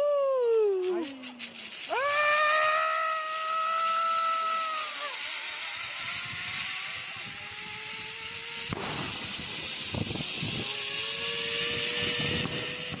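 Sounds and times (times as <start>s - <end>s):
thin mechanical whine: 0.0s - 13.0s
wind on microphone: 9.0s - 13.0s.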